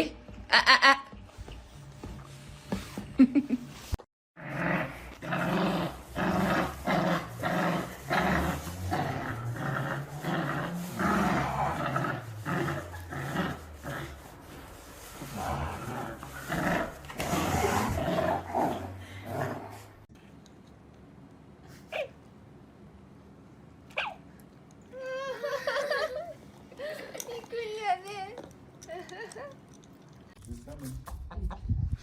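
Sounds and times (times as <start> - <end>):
dog growling: 4.4 - 20.0.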